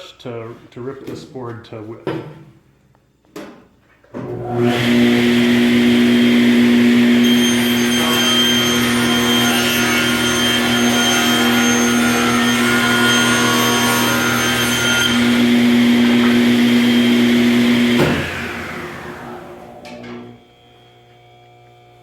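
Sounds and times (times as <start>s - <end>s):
table saw ripping a board: 4.3s - 20.4s
table saw running: 4.3s - 20.8s.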